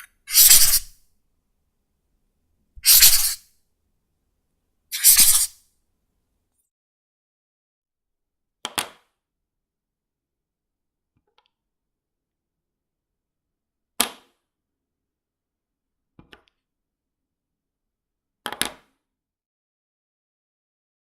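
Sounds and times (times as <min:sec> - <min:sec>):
marker scratching on paper: 0:00.0 - 0:00.9, 0:02.8 - 0:03.4, 0:04.9 - 0:05.6.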